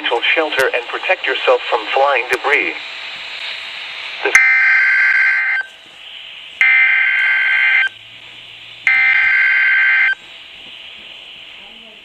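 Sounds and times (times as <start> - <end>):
buzzing screech of data tones: 6.6 - 8.0, 8.9 - 10.2.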